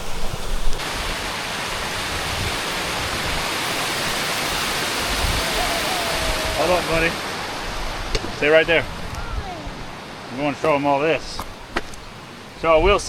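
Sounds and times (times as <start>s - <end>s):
waterfall pouring: 0.0s - 9.0s.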